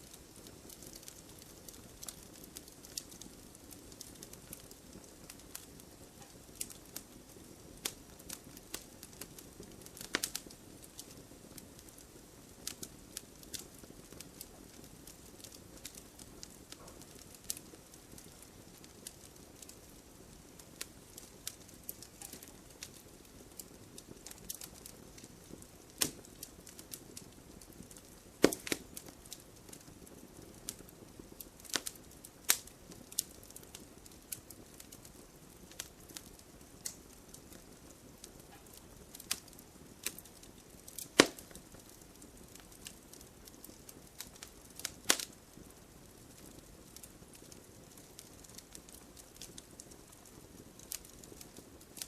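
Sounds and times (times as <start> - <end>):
firewood crackling and popping: 0.0 - 52.0
soft hiss of flames: 0.0 - 52.0.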